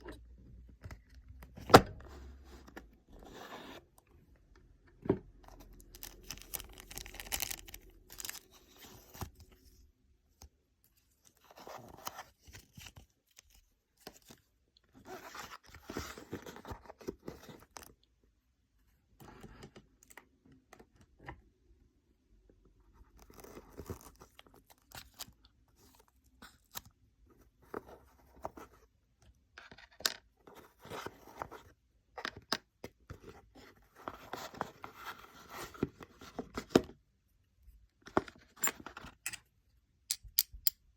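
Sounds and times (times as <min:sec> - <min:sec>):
packaging rustling and crinkling: 0:05.8 - 0:09.2.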